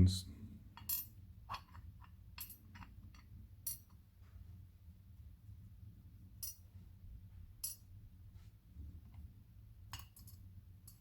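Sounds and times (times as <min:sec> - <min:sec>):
small metal pins clinking: 0:00.8 - 0:01.8, 0:02.4 - 0:04.0, 0:06.4 - 0:06.7, 0:09.9 - 0:11.0.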